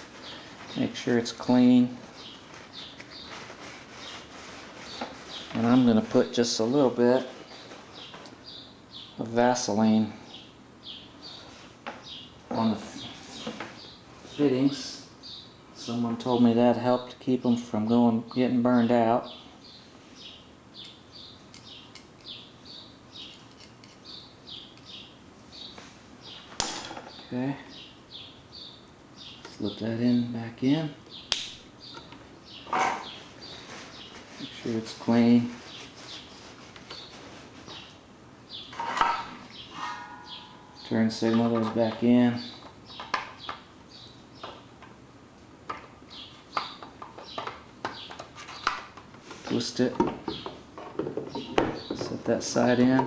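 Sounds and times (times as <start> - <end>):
bird chirping: 0.2 - 3.4, 4.0 - 16.0, 19.2 - 30.2, 30.8 - 44.8, 46.1 - 48.8, 51.2 - 53.0
sharp click: 31.3 - 31.6.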